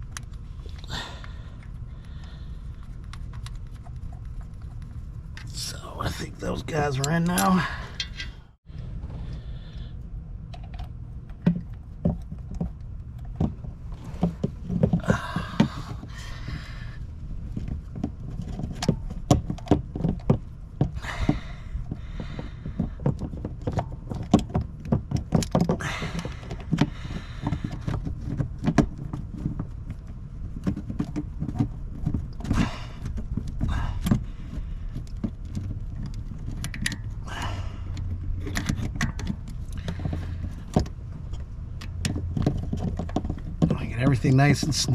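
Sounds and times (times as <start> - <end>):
steady low hum: 0.0 - 44.9
metal tools clinking: 5.4 - 8.5.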